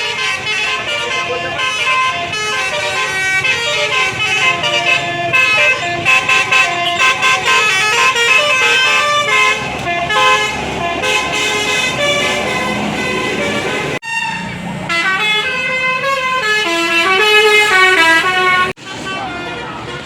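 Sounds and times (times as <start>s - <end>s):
bus horn playing a tune: 0.0s - 20.0s
low vehicle rumble: 0.0s - 20.0s.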